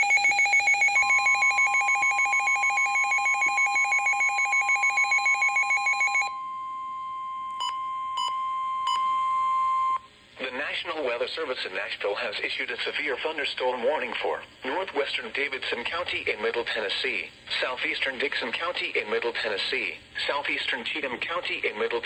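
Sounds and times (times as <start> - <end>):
fast electronic alarm beeps: 0.0 - 6.4
steady alarm tone: 0.0 - 10.0.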